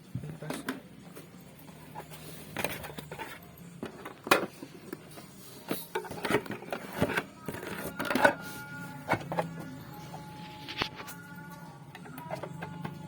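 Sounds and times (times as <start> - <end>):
packaging and boxes being handled: 1.8 - 11.2.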